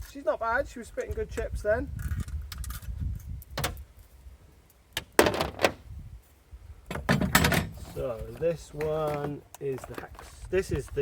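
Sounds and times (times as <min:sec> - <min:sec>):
wind rumble on microphone: 0:00.0 - 0:04.5, 0:05.4 - 0:08.6, 0:10.2 - 0:11.0.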